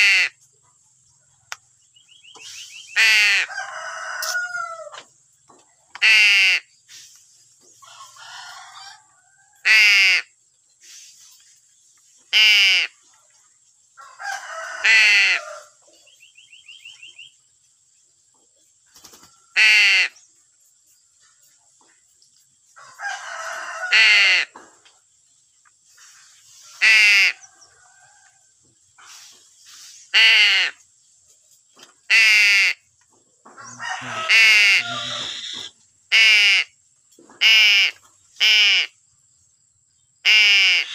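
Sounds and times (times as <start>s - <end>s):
harsh bird calls: 1.8s - 4.9s, 33.6s - 36.7s, 40.2s - 40.9s
rough bird chattering: 33.6s - 36.5s.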